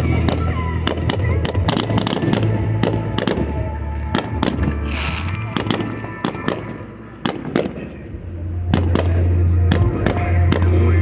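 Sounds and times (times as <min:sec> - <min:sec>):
fireworks bangs and crackles: 0:00.0 - 0:11.0
music with deep bass: 0:00.0 - 0:11.0.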